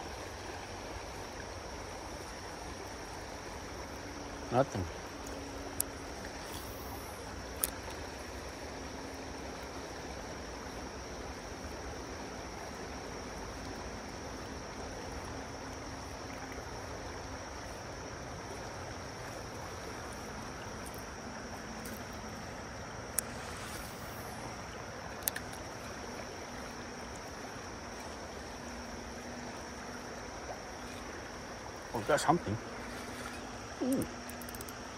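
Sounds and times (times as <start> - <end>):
river water rushing: 0.0 - 34.9
sharp clicks: 33.9 - 34.8.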